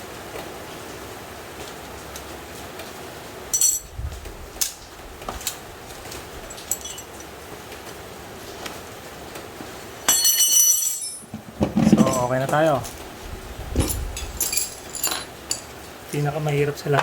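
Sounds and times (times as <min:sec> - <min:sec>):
background hiss: 0:00.0 - 0:17.0
metal tools clinking: 0:03.5 - 0:04.0, 0:06.4 - 0:07.3, 0:10.1 - 0:13.0, 0:13.8 - 0:15.8.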